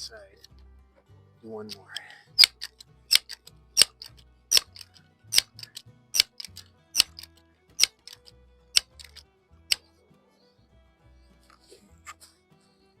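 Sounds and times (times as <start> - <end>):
air rifle pump clacking: 1.7 - 9.2
lever clicks: 1.7 - 9.2.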